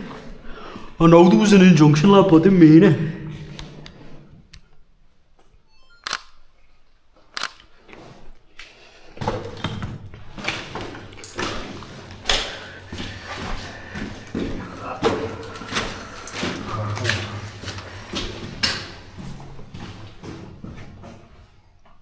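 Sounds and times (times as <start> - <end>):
footsteps on a gritty floor: 7.8 - 22.0.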